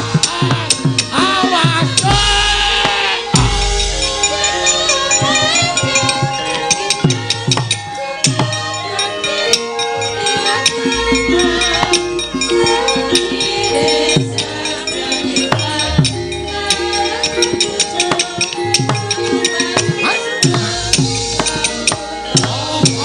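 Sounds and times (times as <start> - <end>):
hand drum strokes: 0.0 - 9.0, 10.2 - 23.0
metallophone tones: 1.2 - 23.0.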